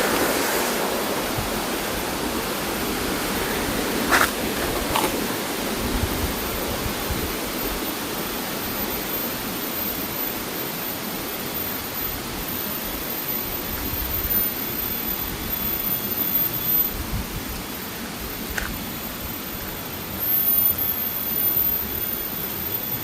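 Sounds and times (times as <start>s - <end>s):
water rushing: 0.0s - 8.5s.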